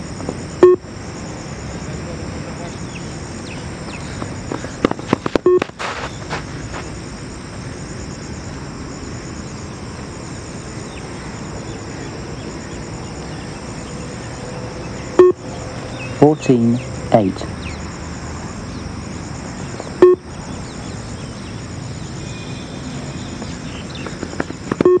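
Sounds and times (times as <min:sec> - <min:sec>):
crickets chirping: 0:00.0 - 0:25.0
short electronic beep: 0:05.4 - 0:05.6, 0:15.2 - 0:15.4, 0:20.0 - 0:20.2.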